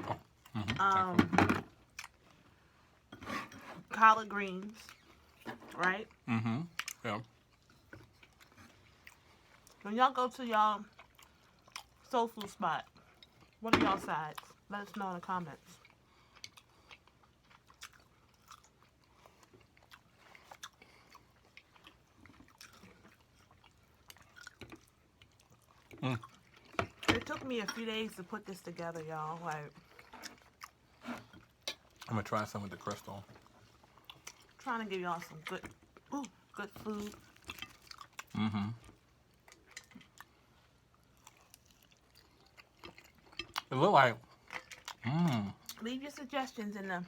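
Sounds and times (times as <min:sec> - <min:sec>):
faint chewing of food: 0:00.0 - 0:01.0, 0:01.6 - 0:13.6, 0:14.2 - 0:47.0.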